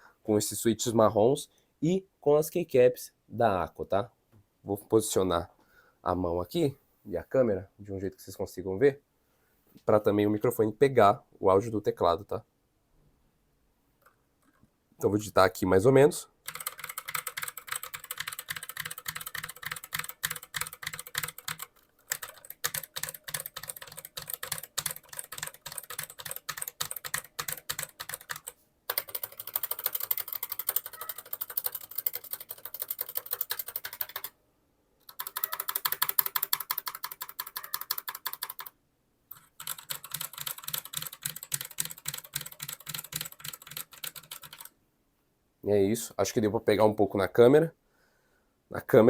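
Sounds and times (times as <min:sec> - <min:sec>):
fast mechanical keyboard typing: 0:16.5 - 0:34.3, 0:35.0 - 0:38.7, 0:39.3 - 0:44.7.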